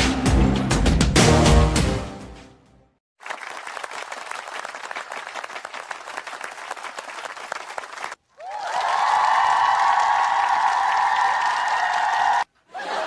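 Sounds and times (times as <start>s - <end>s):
crowd clapping: 3.2s - 12.5s.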